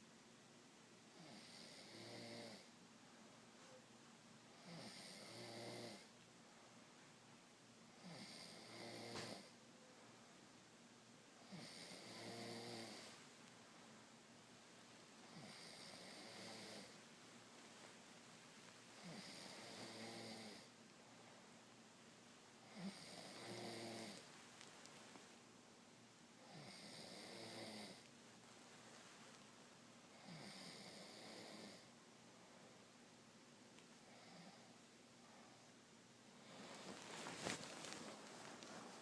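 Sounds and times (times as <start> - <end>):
woman snoring: 1.2 - 2.7, 4.6 - 6.1, 8.0 - 9.5, 11.4 - 13.1, 15.3 - 17.0, 19.0 - 20.7, 22.7 - 24.2, 26.4 - 28.1, 30.2 - 31.9.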